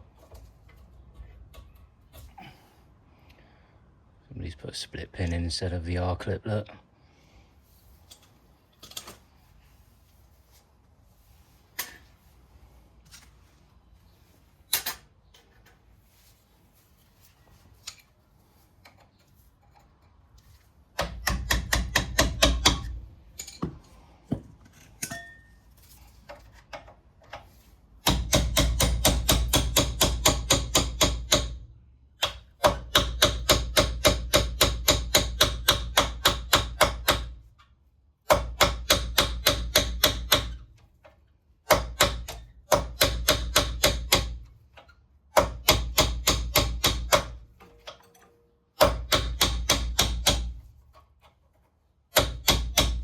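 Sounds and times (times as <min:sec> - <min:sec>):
hammer on metal punch: 0:21.0 - 0:23.0, 0:28.0 - 0:37.4, 0:38.2 - 0:40.6, 0:41.7 - 0:44.4, 0:45.3 - 0:47.4, 0:48.8 - 0:50.6, 0:52.1 - 0:53.0.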